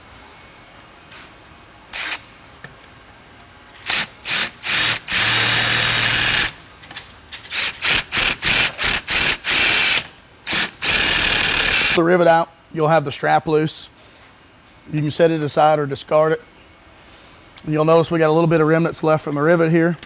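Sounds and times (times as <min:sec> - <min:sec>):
power drill bursts: 0:03.8 - 0:06.6, 0:07.5 - 0:12.0.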